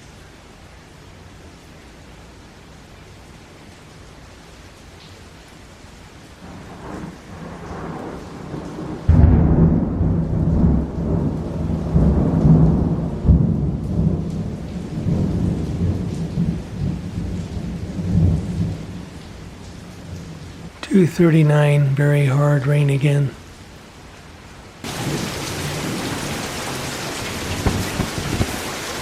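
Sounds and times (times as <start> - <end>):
hard steady rain: 0.0 - 29.0
thunder rumbling: 6.4 - 21.2, 24.8 - 29.0.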